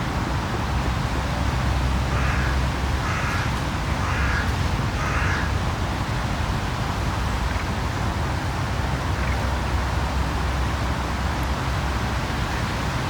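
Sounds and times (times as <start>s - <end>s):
distant city traffic: 0.0s - 13.0s
crow cawing: 2.1s - 5.6s.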